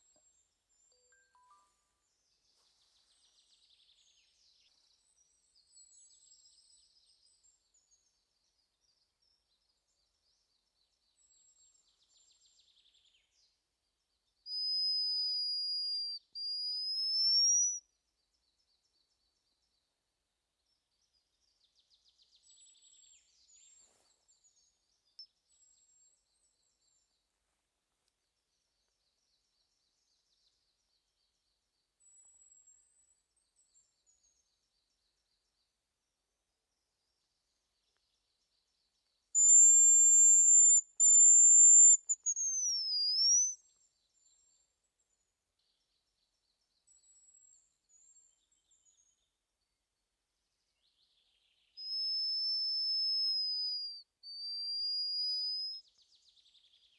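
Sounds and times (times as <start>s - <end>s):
high thin bird whistle: 14.5s - 17.8s, 39.4s - 43.6s, 51.8s - 55.8s
small birds trilling: 39.4s - 43.6s.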